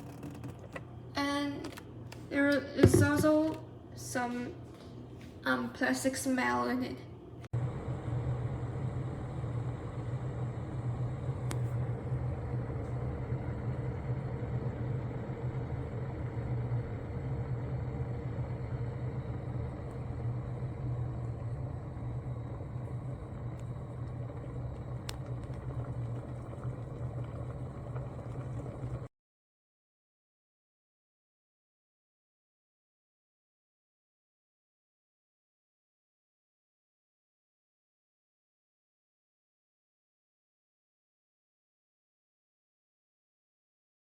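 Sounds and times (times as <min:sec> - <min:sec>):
electric kettle heating water: 0:00.0 - 0:04.4, 0:07.6 - 0:29.1.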